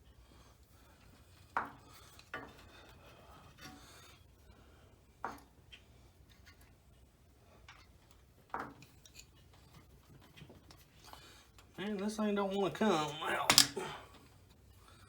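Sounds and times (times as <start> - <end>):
hand tools clinking on metal: 12.0 - 14.0.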